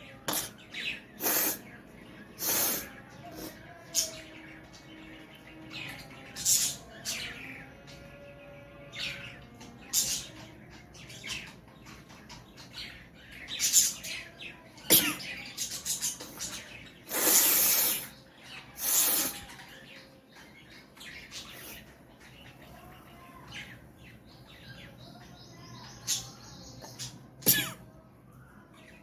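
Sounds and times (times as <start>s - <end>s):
person blowing nose: 1.2s - 1.6s, 17.1s - 18.1s.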